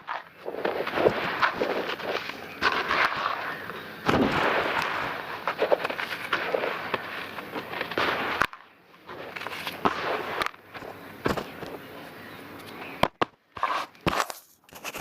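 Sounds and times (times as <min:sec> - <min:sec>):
dry mud crumbling and crunching: 0:00.0 - 0:11.8.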